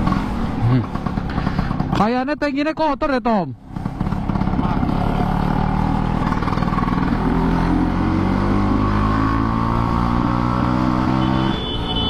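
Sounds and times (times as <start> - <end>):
scooter engine running: 0.0 - 2.0, 3.6 - 8.4.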